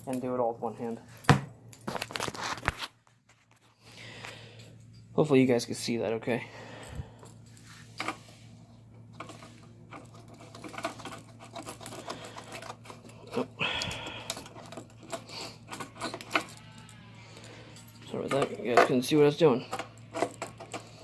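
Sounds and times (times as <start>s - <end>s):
metal couplers clicking and rattling: 9.1s - 21.0s.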